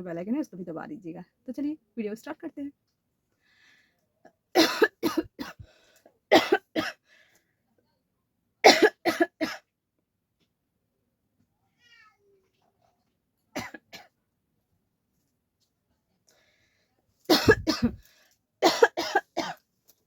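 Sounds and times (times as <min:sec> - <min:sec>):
person coughing: 0:04.6 - 0:05.6, 0:08.7 - 0:09.6, 0:17.3 - 0:18.0, 0:18.6 - 0:19.6.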